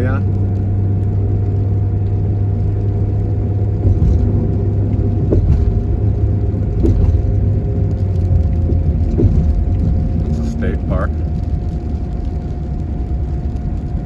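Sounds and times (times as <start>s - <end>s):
road and engine drone in vehicle: 0.0s - 14.0s
light knocks and rattles: 3.7s - 10.6s.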